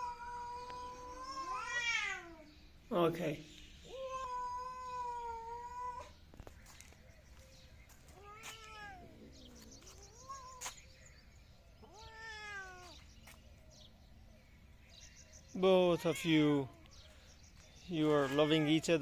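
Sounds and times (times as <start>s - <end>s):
cat meowing: 0.0s - 2.5s, 3.9s - 6.1s, 8.1s - 9.3s, 11.8s - 13.0s, 15.9s - 16.9s.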